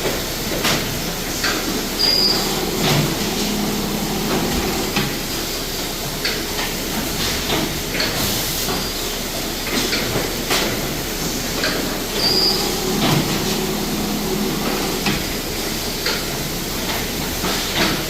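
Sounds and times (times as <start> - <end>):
machine low hum: 1.7 - 5.4, 12.0 - 17.0.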